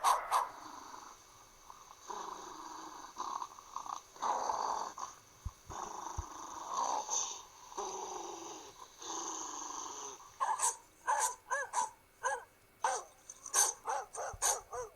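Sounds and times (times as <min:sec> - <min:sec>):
dog barking high: 0:00.0 - 0:00.6, 0:10.4 - 0:14.9
dog growling: 0:00.0 - 0:10.8.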